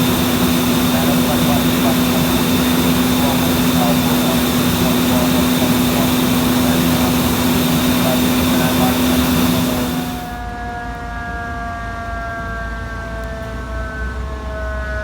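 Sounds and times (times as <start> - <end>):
loud engine humming: 0.0 - 10.4.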